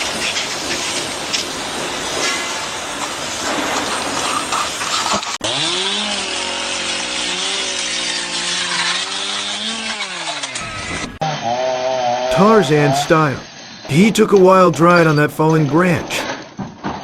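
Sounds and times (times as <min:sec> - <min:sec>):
chainsaw engine revving: 0:05.4 - 0:12.3.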